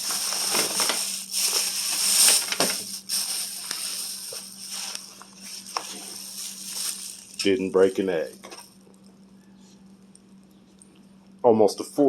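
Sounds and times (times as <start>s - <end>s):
packaging rustling: 0.0s - 8.8s
steady low hum: 0.0s - 12.0s.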